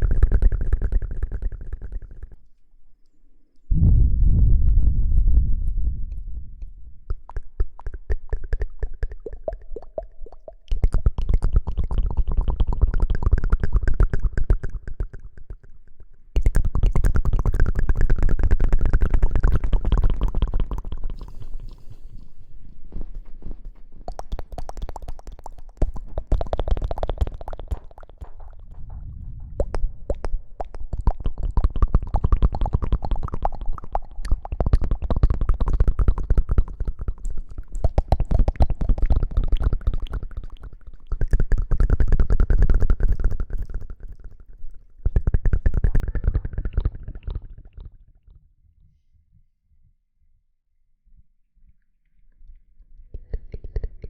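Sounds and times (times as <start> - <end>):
hands and lather rustling on microphone: 20.4 - 30.8.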